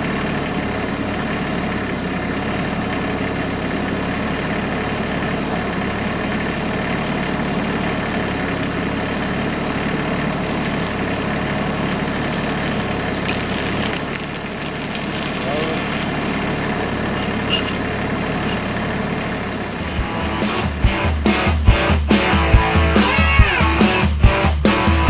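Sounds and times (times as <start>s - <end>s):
tractor engine running: 0.0s - 25.0s.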